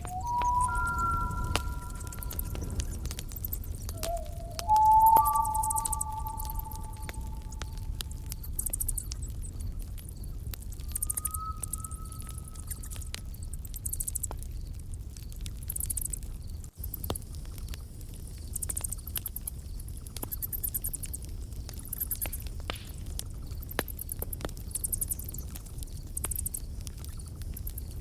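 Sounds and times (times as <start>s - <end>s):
high buzzy chirping: 0.0s - 3.1s, 4.0s - 7.8s
campfire crackling and popping: 0.0s - 28.0s.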